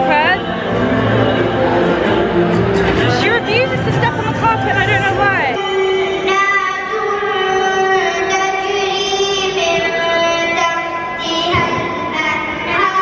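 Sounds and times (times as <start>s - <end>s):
high voice singing slow melody: 5.6s - 13.0s.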